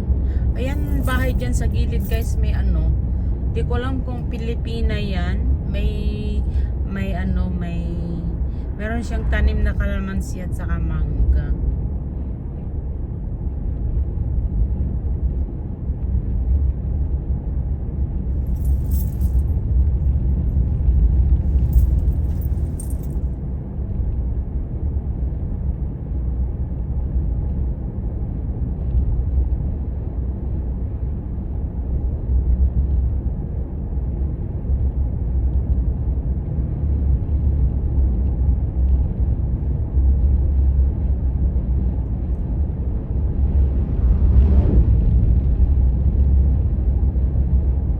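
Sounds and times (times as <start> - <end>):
car driving on road: 0.0 - 47.9
high jingling rattles: 0.7 - 2.4, 18.5 - 19.5, 21.5 - 23.2.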